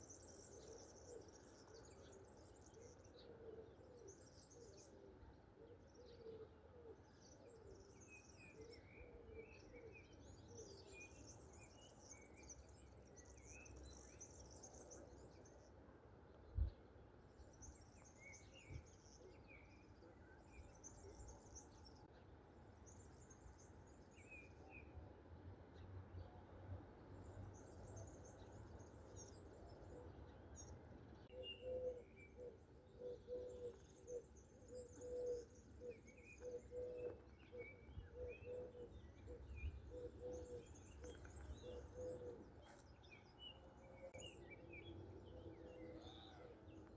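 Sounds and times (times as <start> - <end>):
songbirds chirping: 0.0 - 46.9
dove cooing: 31.3 - 42.5.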